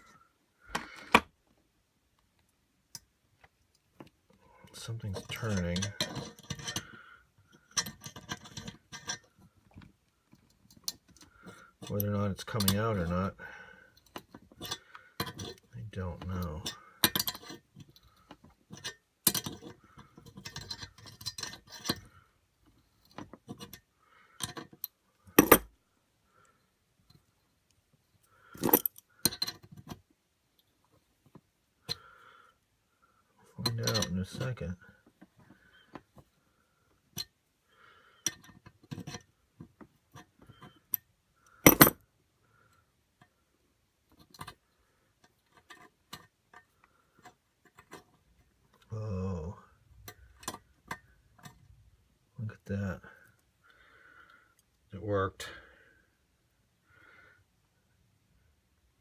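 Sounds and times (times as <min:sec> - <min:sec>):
metal tools clinking: 0:28.6 - 0:29.6, 0:33.6 - 0:34.6, 0:41.6 - 0:42.0
metal clatter: 0:41.6 - 0:42.0.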